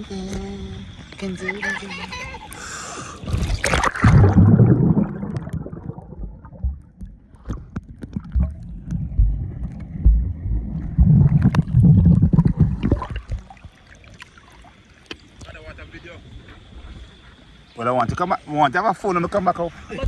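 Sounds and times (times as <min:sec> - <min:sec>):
water splashing against raft: 0:03.3 - 0:09.1.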